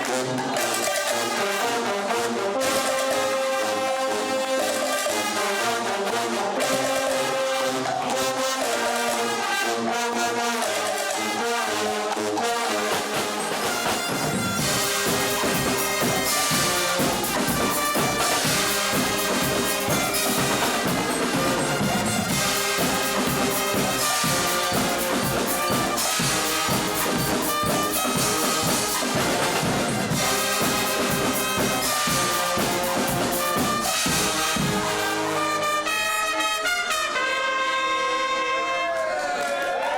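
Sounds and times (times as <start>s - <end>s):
brass band playing: 0.0s - 39.4s
drum beat: 12.7s - 35.4s.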